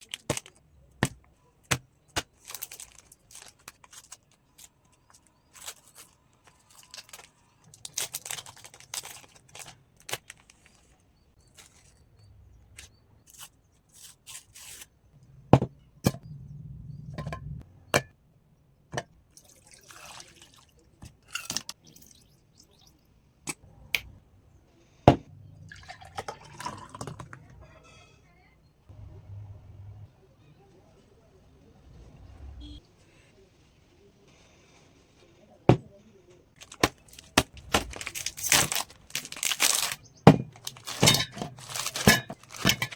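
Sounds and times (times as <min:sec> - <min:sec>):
liquid being poured: 0:19.4 - 0:20.8, 0:21.8 - 0:23.0, 0:25.7 - 0:27.5.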